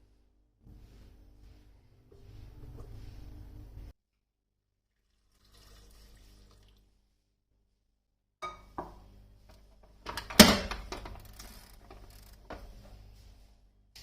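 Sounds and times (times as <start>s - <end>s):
kitchenware clattering: 8.4s - 9.0s
small rattles: 10.0s - 12.9s.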